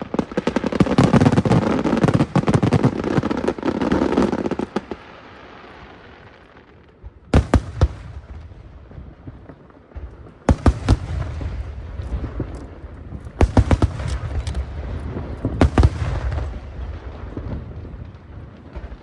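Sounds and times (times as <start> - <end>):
low rumble and crackling: 6.0 - 19.0
firework shells bursting: 10.5 - 16.6.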